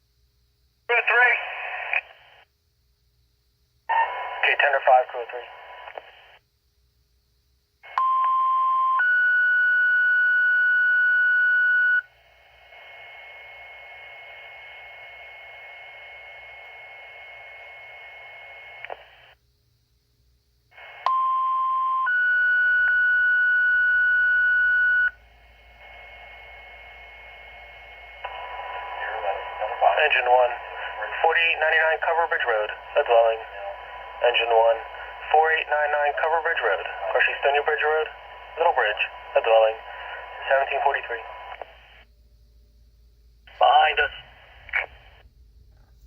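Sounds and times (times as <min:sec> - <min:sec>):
radio channel hiss: 0:00.9 - 0:02.5, 0:03.9 - 0:06.4, 0:25.6 - 0:42.1, 0:43.5 - 0:45.2
radio squelch click: 0:05.6 - 0:06.2, 0:18.7 - 0:19.2.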